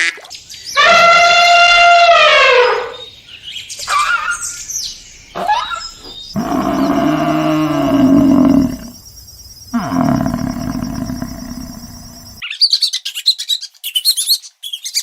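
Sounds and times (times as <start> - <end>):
farm animal calls: 5.4 - 9.0, 9.8 - 12.4.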